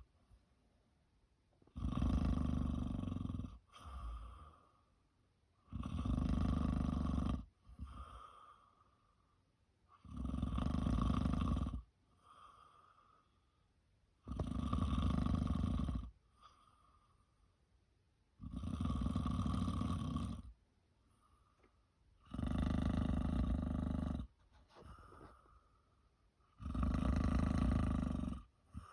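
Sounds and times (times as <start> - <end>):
person snoring: 1.7 - 4.4, 18.4 - 20.5, 22.2 - 24.3, 26.6 - 28.9.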